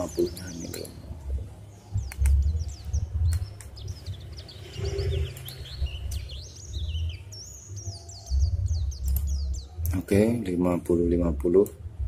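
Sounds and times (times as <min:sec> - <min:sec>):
small birds chirping: 0:00.0 - 0:12.0
steady low rumble: 0:00.0 - 0:12.0
sharp clicks: 0:02.0 - 0:02.6, 0:03.2 - 0:03.8, 0:05.2 - 0:06.3, 0:09.0 - 0:10.1.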